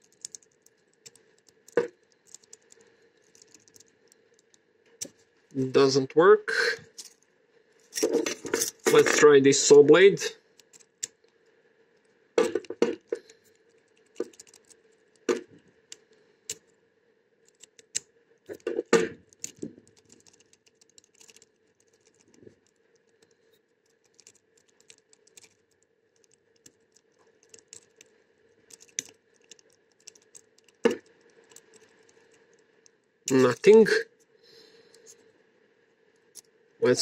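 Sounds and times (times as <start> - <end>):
key rattling in a lock: 0.0 - 4.5, 6.9 - 7.2, 7.8 - 9.2, 12.6 - 14.8, 19.3 - 22.8, 23.8 - 32.5
faint steady hum: 0.0 - 37.0.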